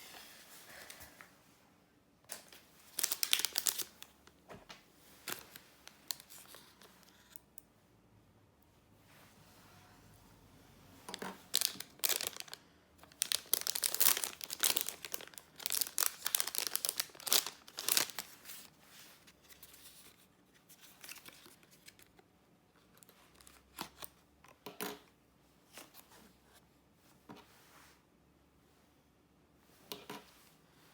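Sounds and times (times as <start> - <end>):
packaging tearing and crinkling: 2.9 - 4.0, 11.5 - 18.7.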